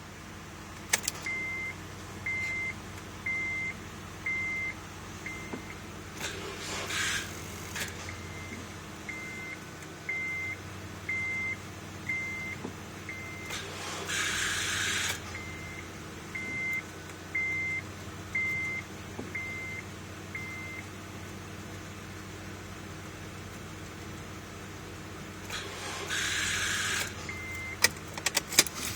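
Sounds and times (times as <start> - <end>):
car warning chime beeping: 0.9 - 5.9, 7.2 - 13.6, 14.3 - 20.9, 26.2 - 28.9.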